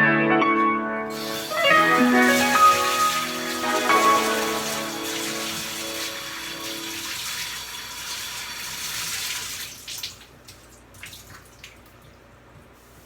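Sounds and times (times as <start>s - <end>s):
background music: 0.0s - 6.9s
water running: 1.0s - 12.3s
water dripping: 1.1s - 12.3s.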